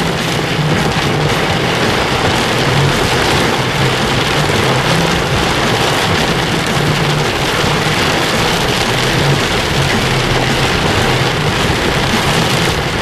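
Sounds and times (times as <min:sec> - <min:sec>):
car hum: 0:00.0 - 0:13.0
rain on a car roof: 0:00.0 - 0:13.0.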